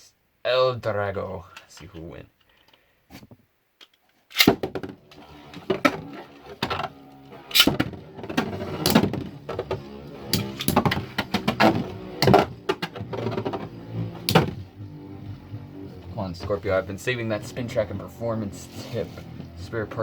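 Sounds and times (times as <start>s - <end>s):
spinning top launcher rip: 7.5s - 7.8s.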